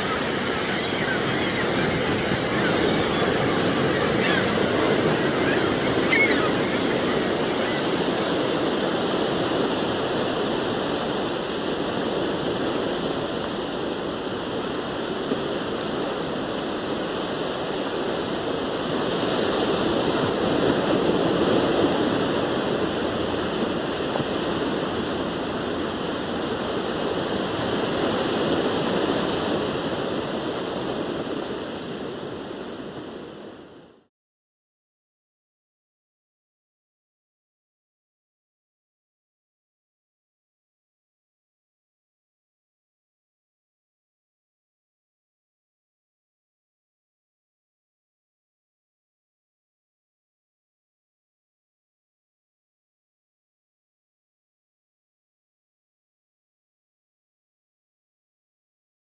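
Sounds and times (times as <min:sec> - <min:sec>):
ocean surf on a beach: 0:00.0 - 0:34.1.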